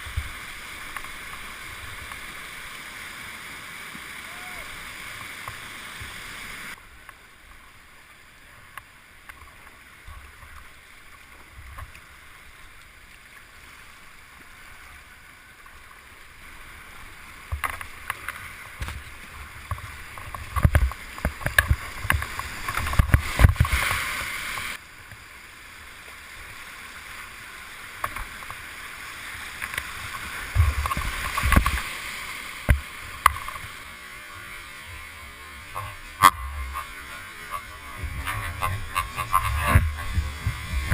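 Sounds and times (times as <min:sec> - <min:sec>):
rushing whitewater: 0:00.0 - 0:40.9
water thumping against boat: 0:18.8 - 0:24.0.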